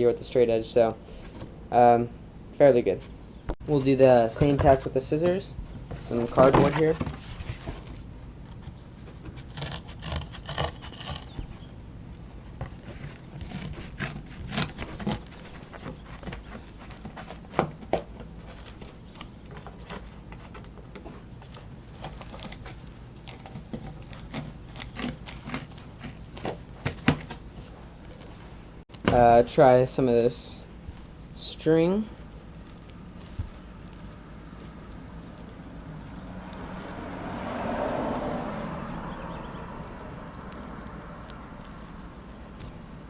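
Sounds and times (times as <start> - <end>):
cardboard rubbing and scraping: 3.7 - 11.7, 12.3 - 28.4, 31.2 - 43.0
scissors snipping cardboard: 9.3 - 11.5, 12.6 - 20.8, 21.5 - 27.4.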